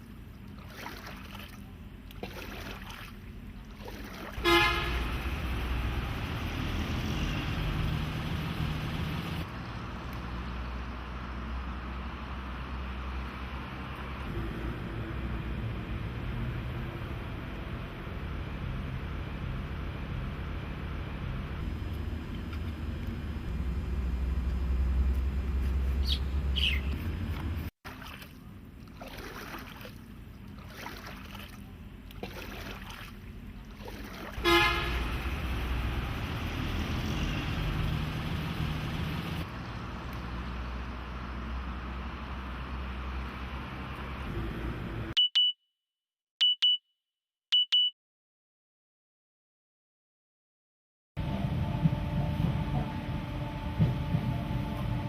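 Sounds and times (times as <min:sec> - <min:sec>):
traffic rumble: 0:00.0 - 0:45.2, 0:51.2 - 0:55.0
vehicle horn honk: 0:04.4 - 0:05.2, 0:34.4 - 0:35.2
short high beeps: 0:45.2 - 0:45.6, 0:46.4 - 0:46.8, 0:47.5 - 0:48.0.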